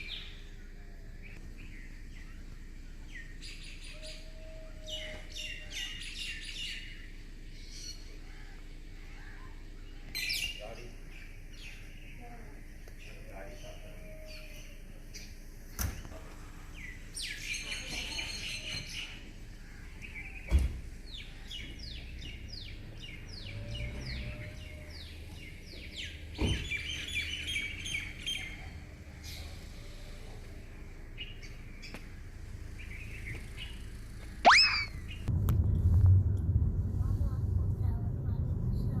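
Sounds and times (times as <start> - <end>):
songbirds singing and chirping: 0.0 - 35.3
low steady background hum: 0.0 - 39.0
quick down-slurred bird notes: 34.5 - 35.0.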